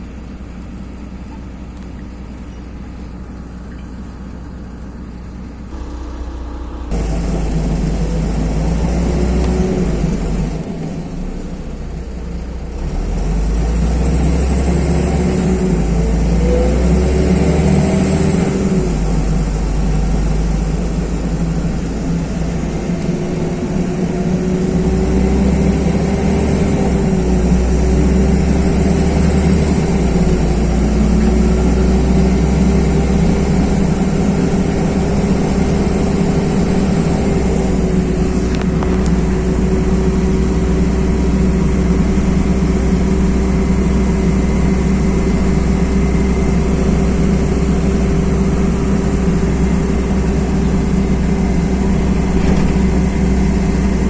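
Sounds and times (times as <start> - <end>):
bus engine drone: 0.0 - 54.0
road rumble: 0.0 - 54.0
faint high whine: 5.7 - 12.6.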